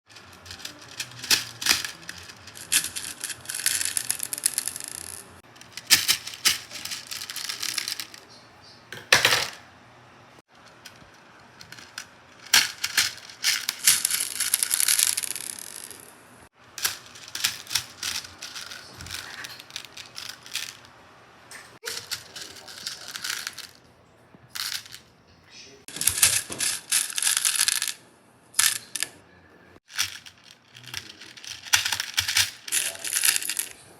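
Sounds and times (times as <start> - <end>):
beads rattling and clicking: 0.1 - 8.3, 11.6 - 16.1, 16.8 - 20.9, 21.8 - 23.8, 24.6 - 25.0, 25.9 - 28.0, 28.6 - 29.0, 29.9 - 33.8.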